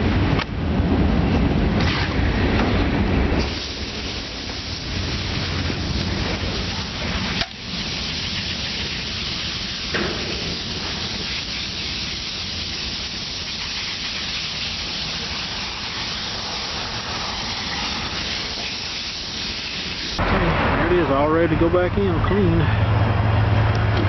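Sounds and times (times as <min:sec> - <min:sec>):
water spray rinsing: 0:03.4 - 0:20.2.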